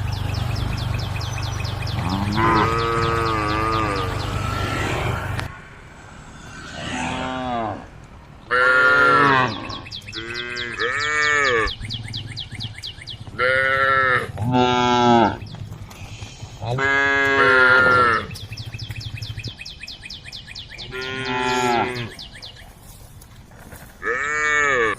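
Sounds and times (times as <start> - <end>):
cattle mooing: 1.9 - 5.5, 7.1 - 11.7, 13.4 - 15.4, 16.7 - 18.4, 20.9 - 22.1, 24.0 - 24.9.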